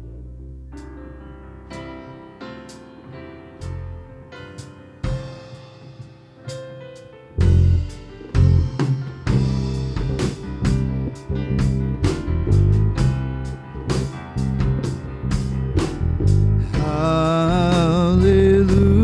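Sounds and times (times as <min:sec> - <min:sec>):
bass and guitar: 0:00.0 - 0:02.3, 0:03.0 - 0:05.2, 0:07.4 - 0:19.0
drums beating: 0:05.0 - 0:06.6, 0:07.4 - 0:19.0.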